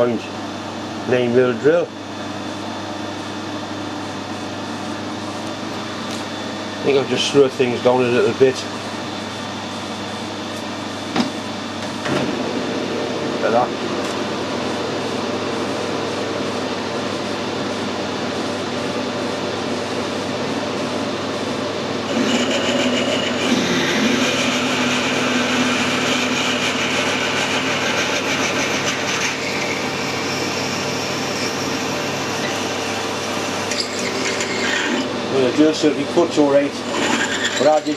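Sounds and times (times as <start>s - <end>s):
metal lathe drilling steel: 22.1s - 35.7s, 36.4s - 37.9s.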